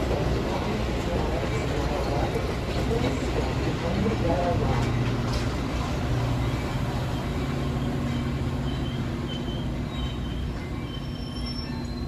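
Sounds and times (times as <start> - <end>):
train rolling past: 0.0 - 12.0
high-pitched wheel squeals: 8.1 - 12.0.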